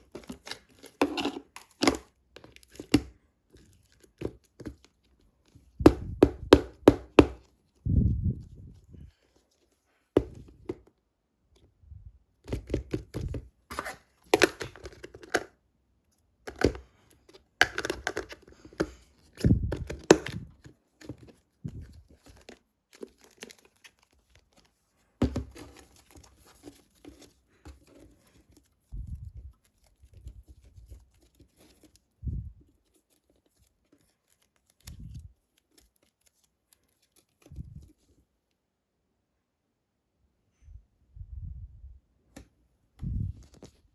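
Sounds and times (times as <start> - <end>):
crinkling and tearing: 16.5 - 38.3.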